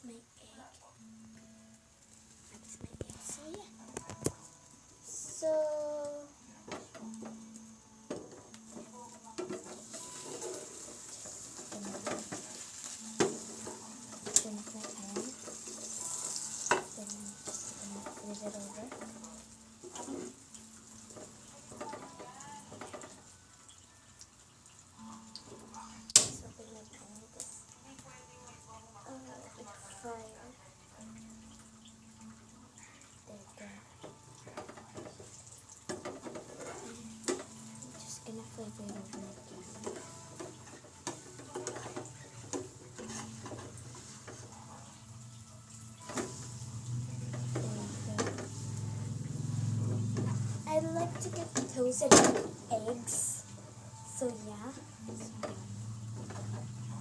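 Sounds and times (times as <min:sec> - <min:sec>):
faint sizzle: 0:00.0 - 0:57.0
spatula scraping frying pan: 0:08.3 - 0:23.4, 0:34.4 - 0:57.0.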